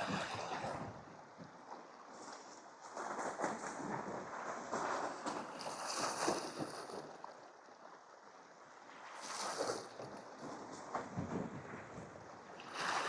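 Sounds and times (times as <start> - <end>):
sea waves washing against rocks: 0.0 - 0.9, 12.6 - 13.0.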